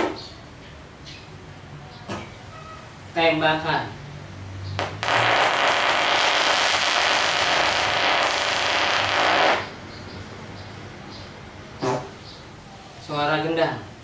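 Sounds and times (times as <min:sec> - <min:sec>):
rapid fart rattle: 0:04.8 - 0:09.8.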